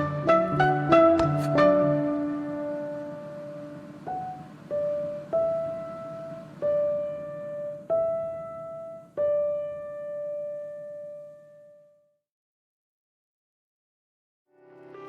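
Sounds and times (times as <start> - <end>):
slow piano-like notes: 0.0 - 12.2, 14.5 - 15.0.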